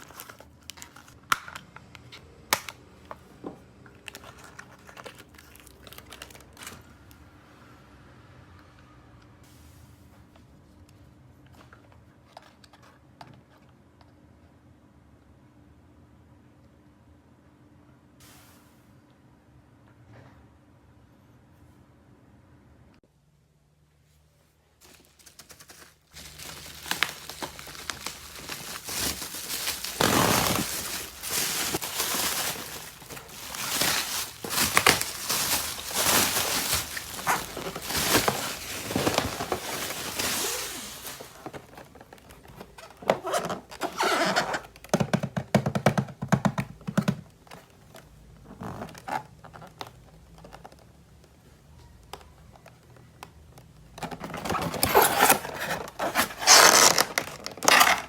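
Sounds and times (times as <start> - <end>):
packaging rustling: 0.0 - 1.2, 4.0 - 6.9, 24.8 - 44.6, 54.0 - 58.0.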